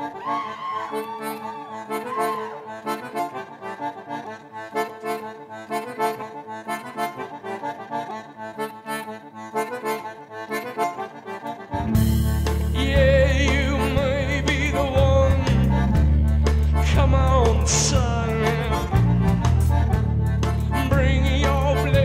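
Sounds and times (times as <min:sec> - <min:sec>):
accordion playing quick notes: 0:00.0 - 0:22.0
live band playing: 0:09.6 - 0:22.0.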